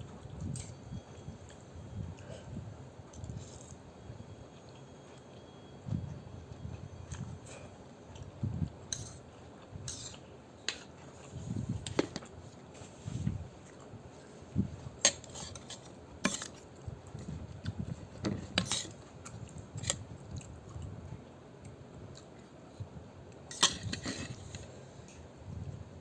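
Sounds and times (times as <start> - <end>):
utensils clinking on bowl: 15.0 - 16.6
chewing noodles: 15.1 - 22.8.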